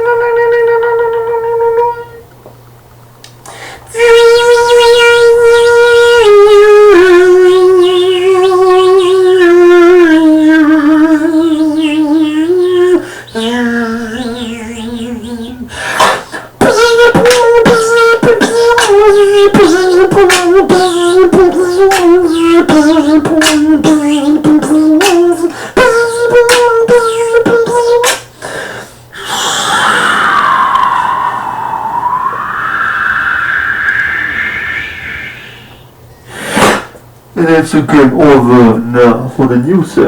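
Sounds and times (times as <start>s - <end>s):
hummed tone: 0.0s - 2.2s, 3.9s - 15.8s, 16.6s - 28.0s, 29.1s - 36.0s
person beatboxing: 3.5s - 34.5s
percussive mouth clicks: 28.0s - 28.3s.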